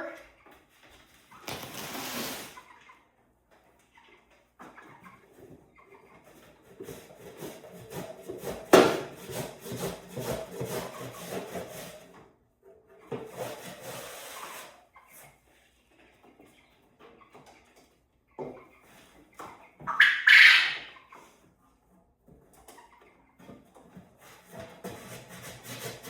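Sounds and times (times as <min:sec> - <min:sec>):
scraping and rubbing in bird cage: 0:00.8 - 0:02.9, 0:06.1 - 0:12.3, 0:12.9 - 0:16.2, 0:23.4 - 0:26.0.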